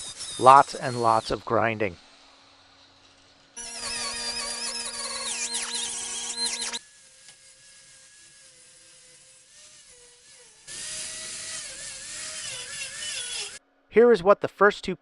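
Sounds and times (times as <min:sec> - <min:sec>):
grinder grinding metal welds: 0:00.0 - 0:13.6.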